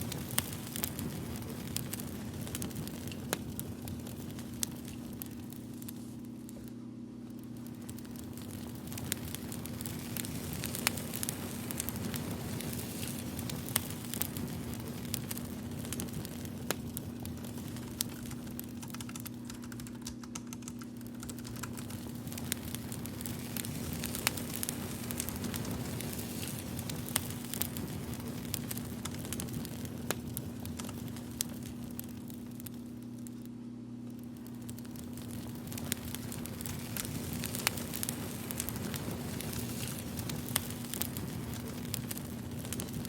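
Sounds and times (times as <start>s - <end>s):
crackling fire: 0.0s - 43.0s
steady low hum: 0.0s - 43.0s
computer keyboard typing: 18.2s - 21.8s.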